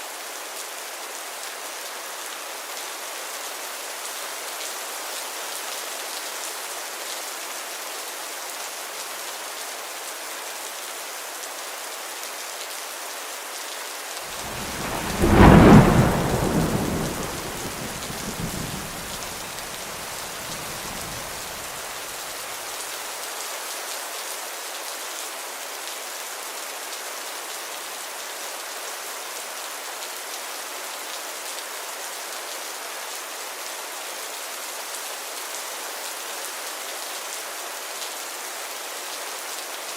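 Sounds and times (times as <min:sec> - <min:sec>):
heavy rain falling: 0:13.4 - 0:24.1
thunder clap and rumble: 0:14.4 - 0:21.8.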